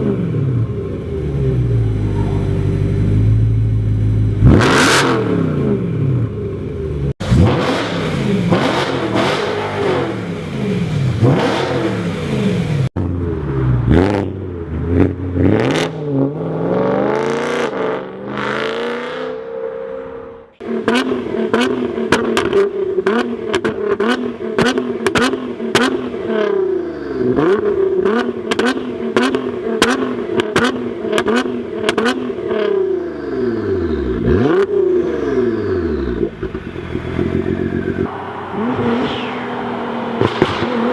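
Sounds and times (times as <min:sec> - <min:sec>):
car engine revving: 0:00.0 - 0:40.9
exhaust pops and crackles: 0:40.2 - 0:40.9.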